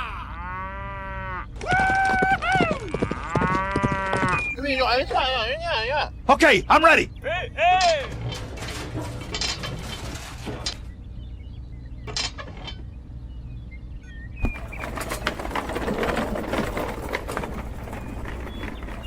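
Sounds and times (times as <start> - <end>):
clicking and clattering: 7.8 - 10.9, 14.4 - 19.0
faint bird chirps: 10.7 - 14.8.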